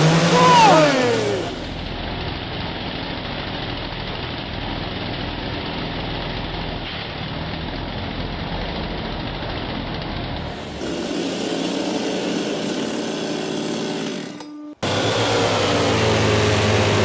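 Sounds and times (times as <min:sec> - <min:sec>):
chainsaw engine running: 0:00.0 - 0:02.0, 0:10.4 - 0:17.0.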